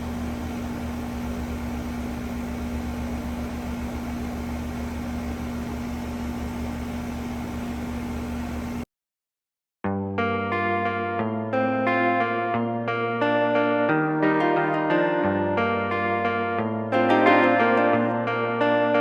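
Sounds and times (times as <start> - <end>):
air conditioner running: 0.0 - 8.8.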